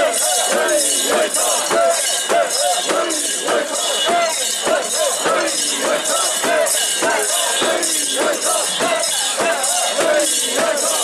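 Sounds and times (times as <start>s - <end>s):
people shouting rhythmic chant: 0.0s - 11.0s.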